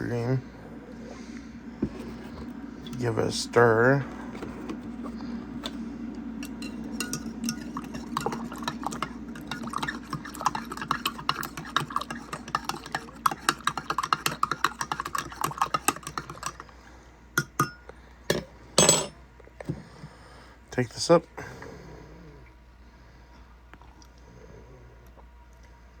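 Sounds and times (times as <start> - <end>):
low steady hum: 0.0 - 26.0
spoon clinking in mug: 6.4 - 8.7, 17.4 - 19.1.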